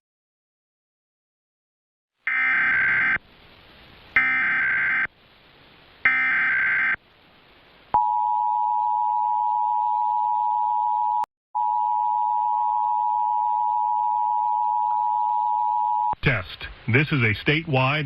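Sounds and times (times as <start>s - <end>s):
screechy digital data burst: 4.2s - 5.1s, 6.1s - 7.0s.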